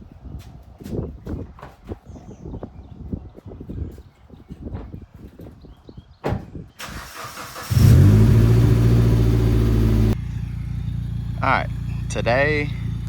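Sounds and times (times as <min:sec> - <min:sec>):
car engine starting and idling: 0:06.8 - 0:13.0.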